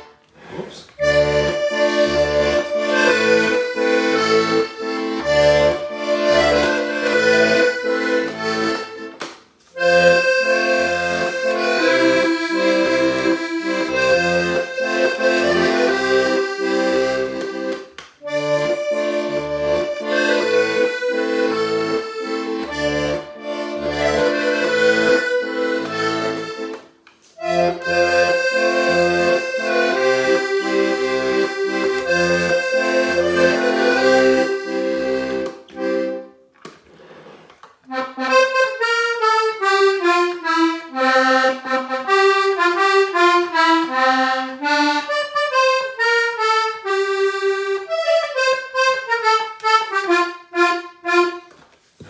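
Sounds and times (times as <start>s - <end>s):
button accordion playing a tune: 0.0s - 36.5s, 37.2s - 51.6s.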